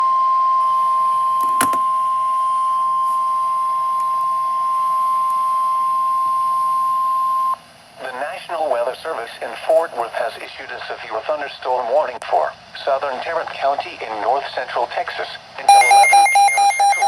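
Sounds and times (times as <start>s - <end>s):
high-pitched alarm tone: 15.7s - 17.0s.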